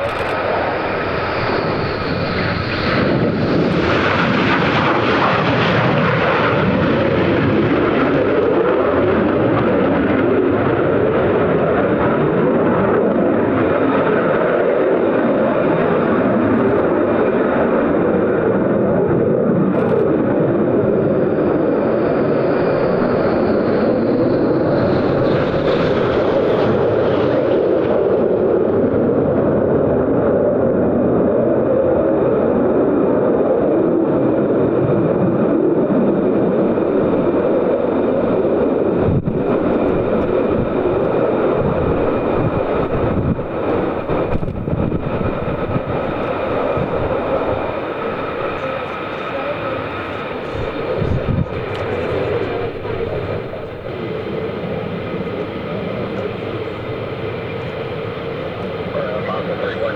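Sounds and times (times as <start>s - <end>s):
high whine: 0.0s - 5.4s, 36.9s - 59.9s
military jet engine roar: 0.0s - 59.9s.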